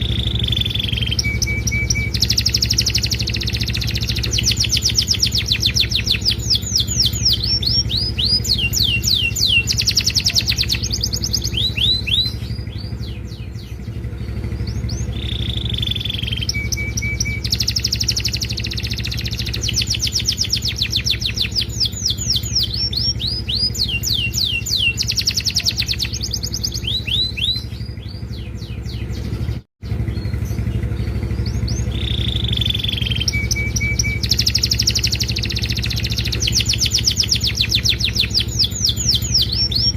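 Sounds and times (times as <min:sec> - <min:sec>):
canary singing trills: 0:00.0 - 0:39.9
steady low hum: 0:00.0 - 0:39.9.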